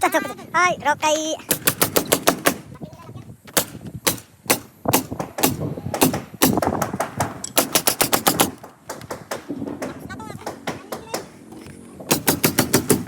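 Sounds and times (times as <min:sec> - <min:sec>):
nail gun firing: 0:01.5 - 0:02.7, 0:03.5 - 0:11.5, 0:12.1 - 0:13.0.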